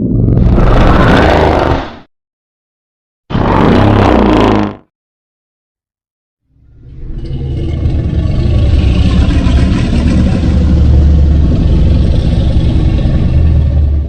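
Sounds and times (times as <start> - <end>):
loud rough low rumble: 6.6 - 14.0.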